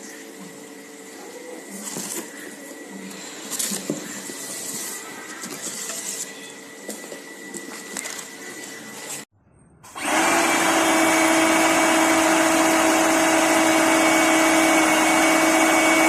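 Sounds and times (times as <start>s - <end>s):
pressure washer motor running: 10.0s - 16.0s.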